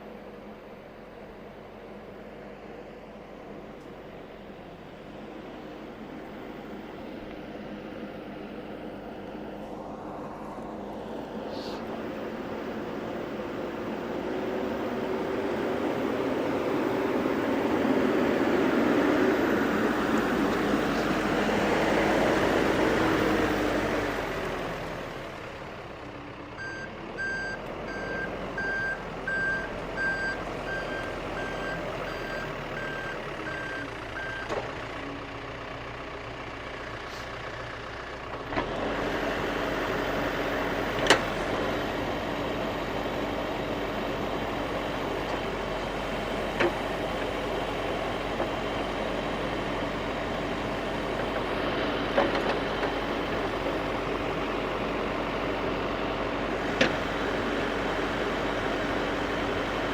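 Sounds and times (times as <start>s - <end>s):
diesel engine working: 0.0s - 59.9s
reverse alarm beeping: 26.6s - 34.4s.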